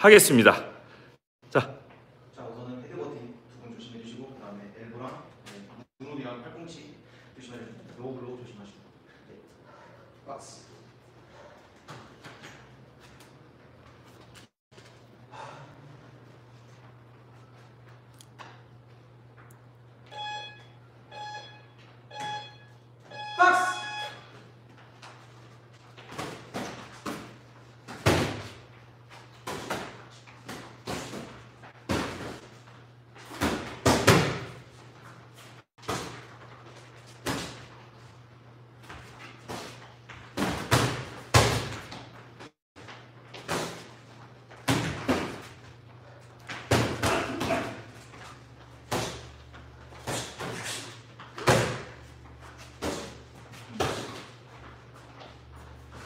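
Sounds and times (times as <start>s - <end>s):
boxing gloves punches landing: 33.3s - 34.6s.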